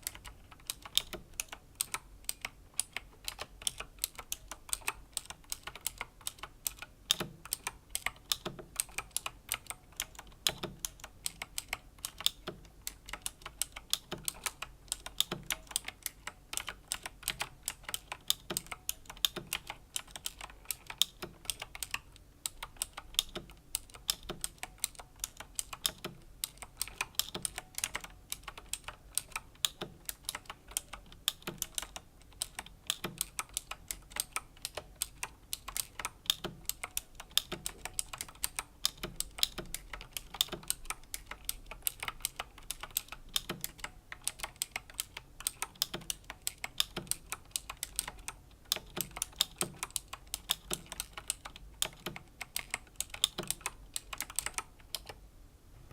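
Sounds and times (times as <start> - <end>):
sharp keyboard key clicks: 0.0 - 55.2.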